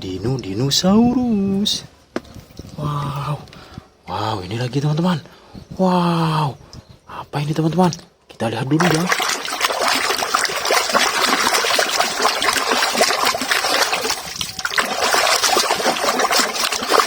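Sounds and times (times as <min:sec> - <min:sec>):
water splashing and trickling: 0:08.8 - 0:17.0.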